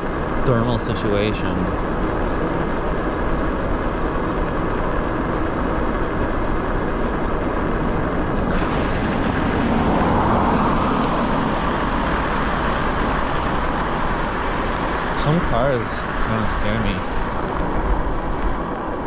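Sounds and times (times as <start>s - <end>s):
wind and road rush: 0.0s - 19.0s
car passing: 8.5s - 19.0s.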